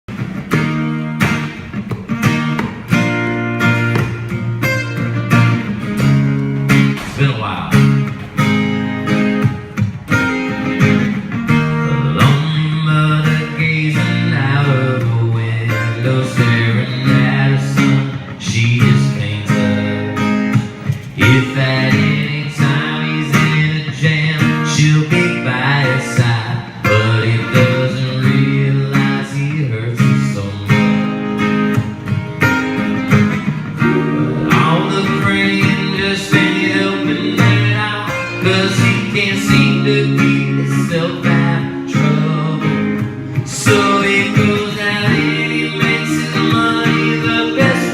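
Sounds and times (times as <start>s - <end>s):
strummed acoustic guitar: 0.1s - 47.9s
person singing: 33.8s - 47.9s.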